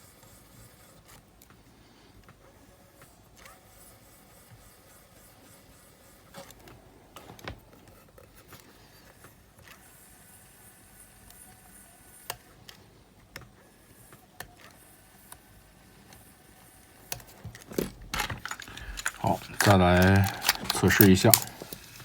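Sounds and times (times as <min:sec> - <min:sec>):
low steady background noise: 0:00.0 - 0:22.0
small mechanism clicks and taps: 0:17.0 - 0:22.0.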